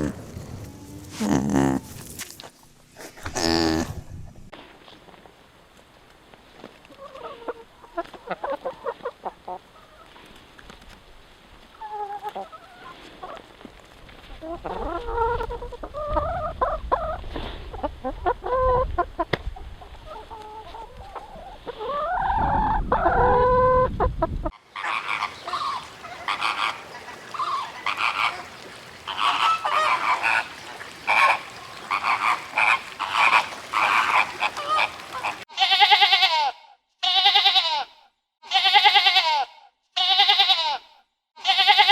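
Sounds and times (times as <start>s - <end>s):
rapid repeated animal calls: 24.6s - 35.4s
fowl clucking and honking: 24.7s - 36.2s
different animal call: 24.7s - 40.8s.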